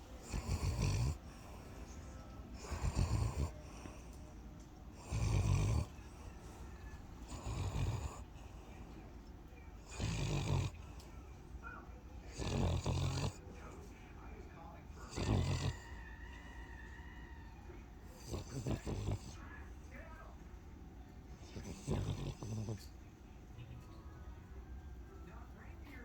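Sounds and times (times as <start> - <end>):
rasping snores: 0.0 - 4.3, 4.9 - 9.0, 9.8 - 11.1, 12.2 - 13.5, 14.9 - 16.8, 18.0 - 19.5, 21.4 - 23.0
quiet breathing: 0.0 - 26.0.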